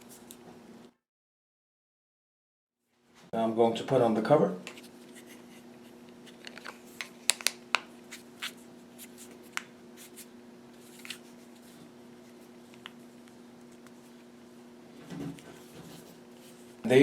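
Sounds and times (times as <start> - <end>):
faint steady hum: 2.9 - 17.0
plastic cover clicking into place: 6.4 - 7.9.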